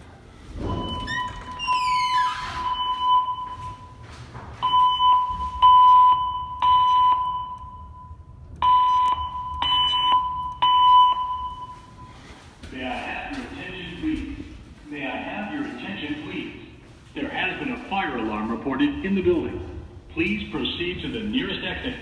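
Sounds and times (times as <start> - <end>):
fire alarm beeps: 0.5 - 12.5.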